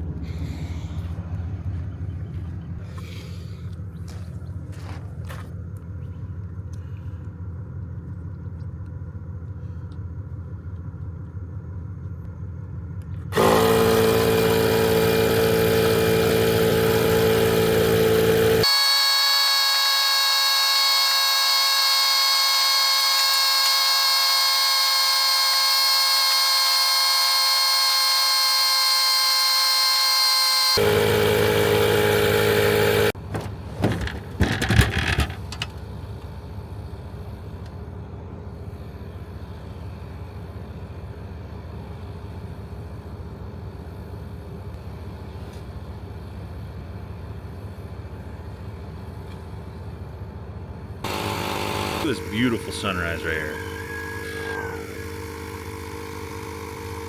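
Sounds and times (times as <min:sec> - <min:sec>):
low steady rumble: 0:00.0 - 0:13.4
loud electronic chord: 0:51.1 - 0:57.0.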